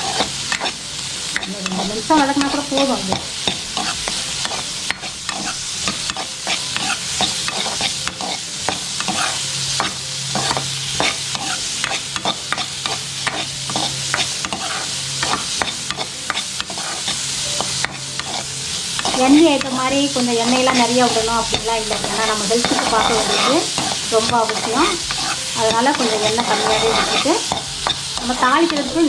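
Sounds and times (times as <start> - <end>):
onions sizzling in oil: 0.0 - 29.0
spatula scraping a pan: 0.0 - 29.0.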